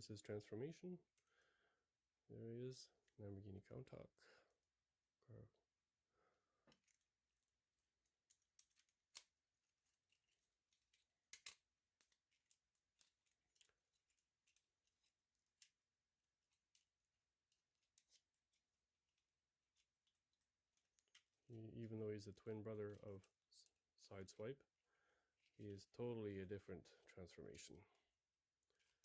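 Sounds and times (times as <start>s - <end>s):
toy parts clicking and snapping: 8.2s - 9.4s, 10.1s - 15.8s.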